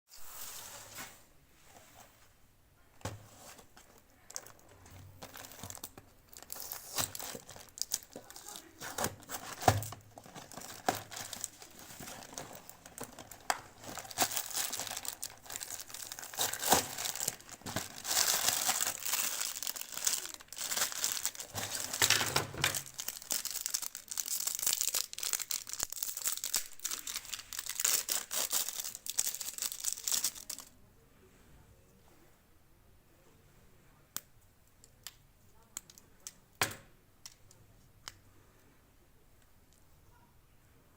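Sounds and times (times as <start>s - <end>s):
chocolate wrappers crinkling and tearing: 3.8s - 30.7s.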